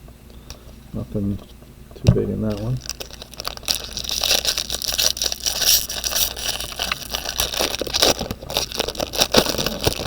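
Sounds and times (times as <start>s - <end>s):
card pack wrapper crinkling: 2.4s - 10.0s
cards scraping together: 3.9s - 10.0s.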